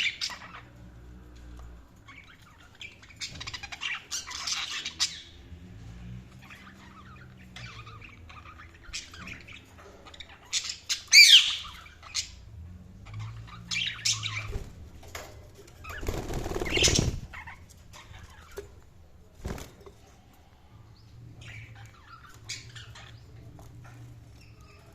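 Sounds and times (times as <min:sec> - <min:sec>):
budgerigars chirping and squawking: 0:00.0 - 0:20.2, 0:20.9 - 0:24.9
wing flapping: 0:15.8 - 0:17.4.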